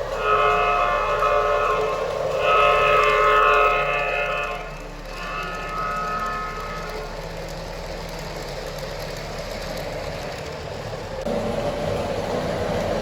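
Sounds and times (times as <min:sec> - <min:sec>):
multi-tone train horn: 0:00.0 - 0:07.3
locomotive electronic sound: 0:00.0 - 0:13.0
model train wheels rolling on track: 0:00.0 - 0:13.0.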